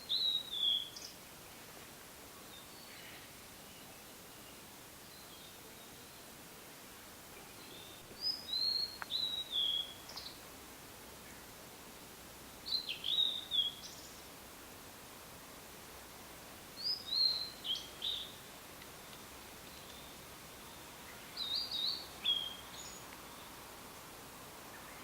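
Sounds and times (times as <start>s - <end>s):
bird whistling song: 0.0s - 1.1s, 7.7s - 10.3s, 12.7s - 14.1s, 16.8s - 18.4s, 21.4s - 23.0s.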